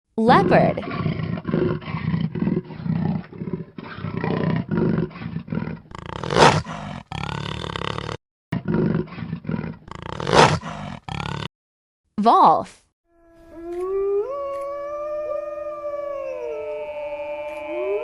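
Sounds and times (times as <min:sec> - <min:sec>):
leopard roars: 0:00.4 - 0:11.5.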